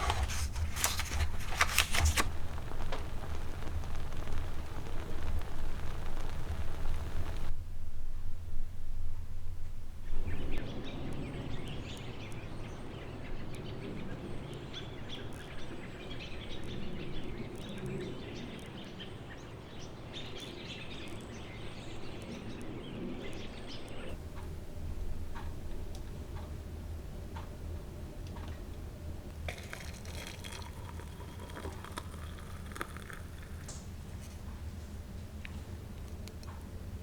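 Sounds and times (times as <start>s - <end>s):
birds chirping: 0.0s - 7.5s
steady hiss: 0.0s - 7.6s.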